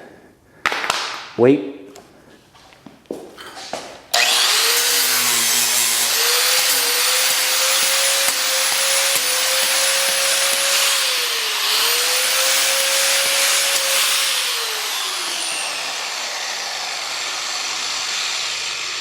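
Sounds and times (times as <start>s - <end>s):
angle grinder motor whine: 4.1s - 19.0s.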